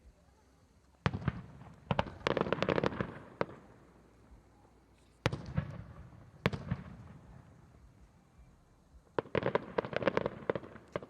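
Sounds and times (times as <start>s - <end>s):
fireworks cracking and banging: 1.0s - 3.7s, 9.1s - 11.0s.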